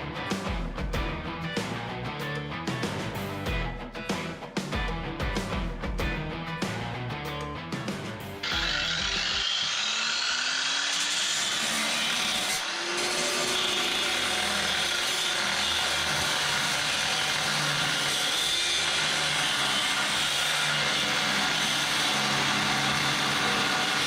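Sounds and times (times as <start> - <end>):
power tool grinding steel: 8.4 - 24.0.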